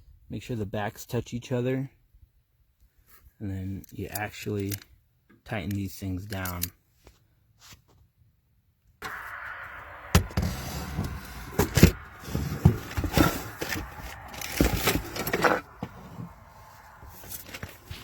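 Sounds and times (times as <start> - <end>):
steady background noise: 9.0 - 18.0
knocks and clatters: 11.6 - 16.3.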